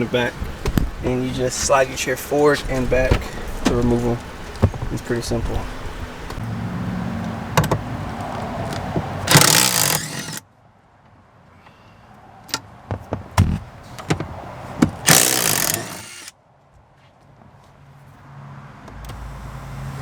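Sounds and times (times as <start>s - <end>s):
handling knocks and clicks: 0.4s - 6.4s, 7.6s - 10.4s, 12.5s - 16.3s
impact gun rattling: 9.3s - 10.4s, 15.0s - 16.3s.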